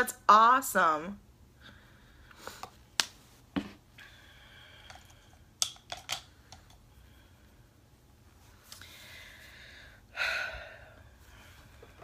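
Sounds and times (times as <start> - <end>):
small objects clicking and tapping: 4.8 - 6.8.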